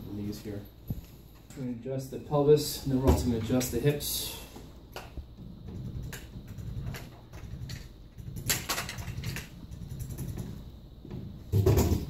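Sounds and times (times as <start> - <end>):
rattling clatter of clicks: 5.7 - 10.6.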